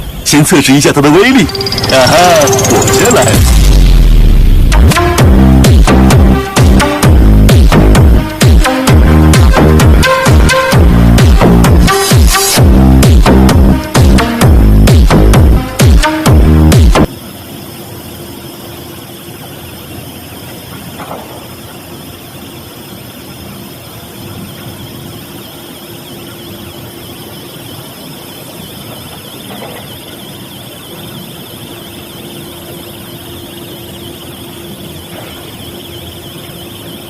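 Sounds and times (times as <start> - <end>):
faint high whine: 0.0 - 5.6, 17.0 - 37.0
machine hissing and humming: 0.0 - 37.0.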